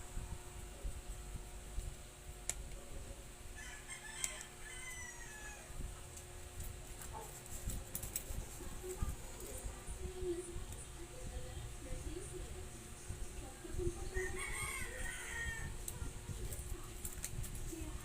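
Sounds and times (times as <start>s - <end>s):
rooster crowing: 3.6s - 5.8s, 14.1s - 15.8s.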